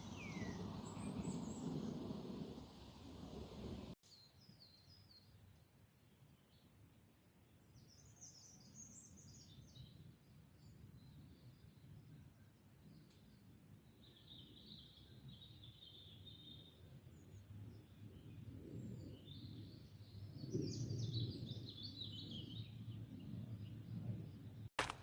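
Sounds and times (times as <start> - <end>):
songbird twittering: 0.0 - 2.1
low outdoor rumble: 0.0 - 4.0.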